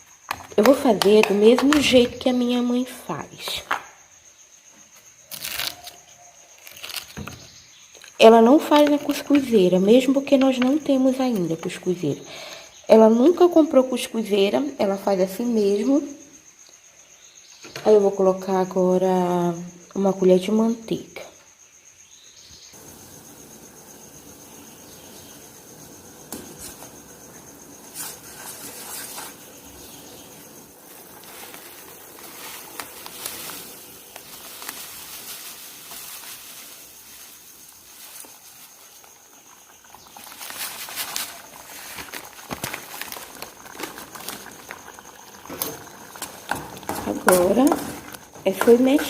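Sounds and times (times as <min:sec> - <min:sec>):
water simmering in a pan: 0:22.7 - 0:49.0
spoon scraping a pan: 0:27.8 - 0:33.7.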